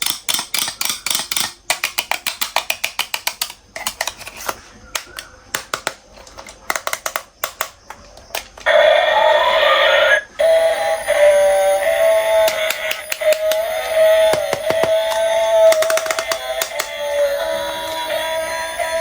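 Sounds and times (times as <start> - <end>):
sharp clicks and taps: 0.0 - 4.2, 4.9 - 8.7, 12.4 - 17.0.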